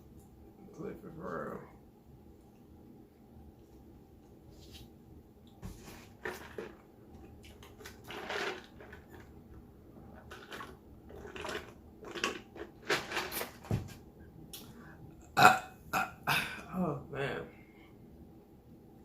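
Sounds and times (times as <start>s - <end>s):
food crunching: 10.2s - 13.6s.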